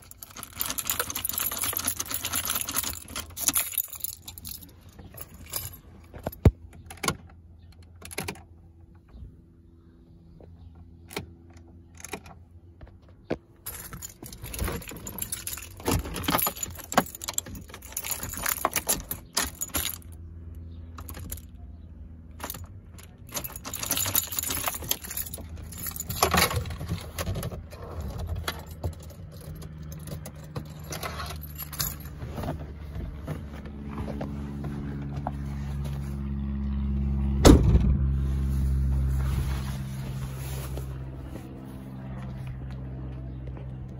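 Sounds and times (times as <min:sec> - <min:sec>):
car keys jangling: 0:00.0 - 0:08.5, 0:13.6 - 0:21.6, 0:22.3 - 0:32.7
key clicking in ignition: 0:00.0 - 0:08.6, 0:13.6 - 0:20.2, 0:22.3 - 0:27.2.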